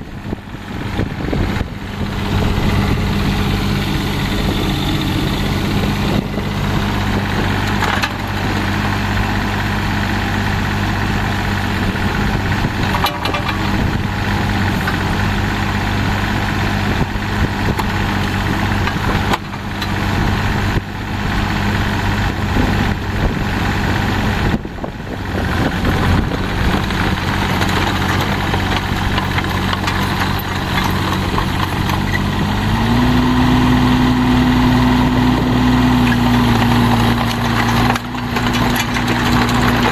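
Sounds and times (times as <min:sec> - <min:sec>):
diesel excavator engine idling: 0:00.0 - 0:39.9.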